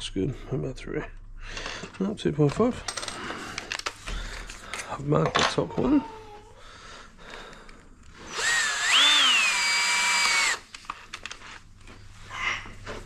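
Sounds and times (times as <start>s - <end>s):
power drill whining: 8.1s - 10.7s.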